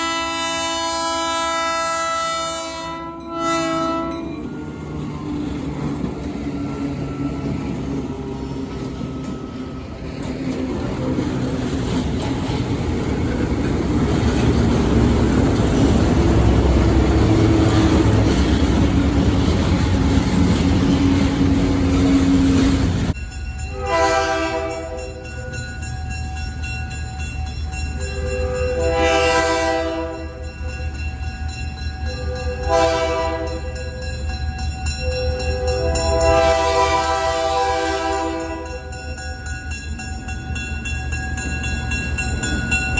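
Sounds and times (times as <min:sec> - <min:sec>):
multi-note train horn chord: 0:00.0 - 0:04.4, 0:23.8 - 0:25.1, 0:28.5 - 0:30.4, 0:32.6 - 0:33.7, 0:35.7 - 0:38.8
train air horn: 0:00.0 - 0:04.5, 0:17.2 - 0:18.4, 0:23.7 - 0:25.1, 0:28.2 - 0:30.4, 0:32.2 - 0:33.7, 0:35.6 - 0:38.7
train rumble: 0:00.0 - 0:42.9.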